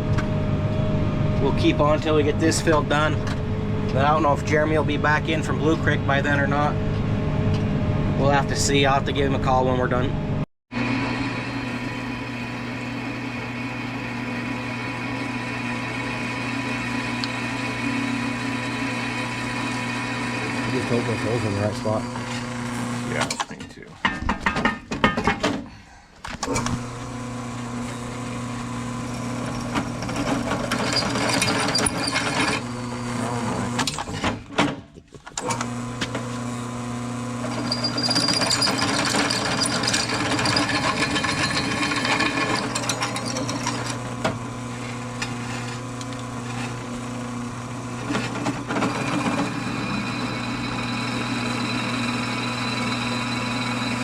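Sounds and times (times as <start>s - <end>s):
power drill running: 10.8s - 23.3s, 26.4s - 34.2s, 35.4s - 54.0s.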